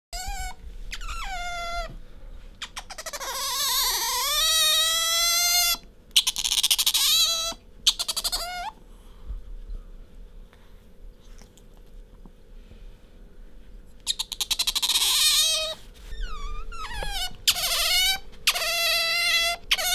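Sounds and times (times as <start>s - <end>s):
otter squeaking: 0.2s - 1.9s, 14.1s - 19.9s.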